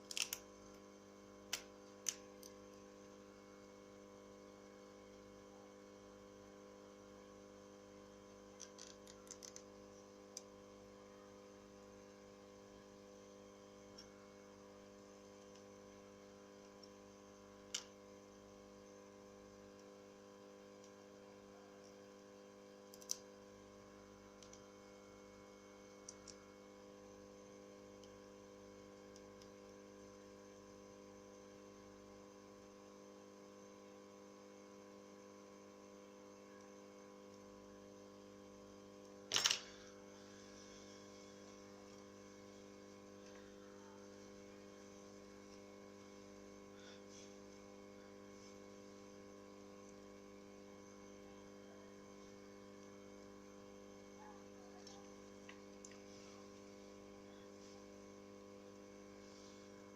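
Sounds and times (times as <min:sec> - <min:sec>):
electrical hum: 0:00.0 - 0:59.9
small tools clicking and tapping: 0:08.6 - 0:09.7.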